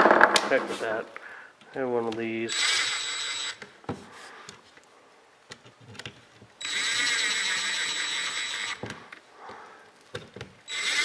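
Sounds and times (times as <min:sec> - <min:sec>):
handling clicks and knocks: 0:00.0 - 0:02.4, 0:03.6 - 0:06.6, 0:08.8 - 0:10.7
electric screwdriver running: 0:02.5 - 0:03.7, 0:06.6 - 0:09.0, 0:10.7 - 0:11.0.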